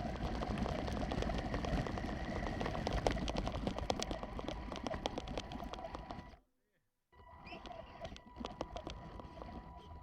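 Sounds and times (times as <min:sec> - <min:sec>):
toy trucks driving over rough ground: 0:00.0 - 0:06.4.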